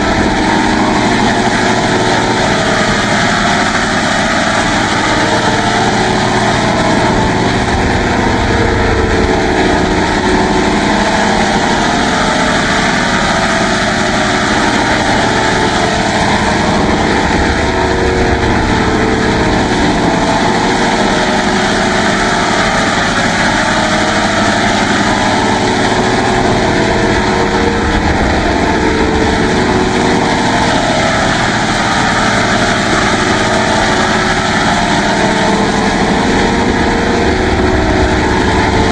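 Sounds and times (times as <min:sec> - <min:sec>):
dense buzzing synth drone: 0:00.0 - 0:38.9.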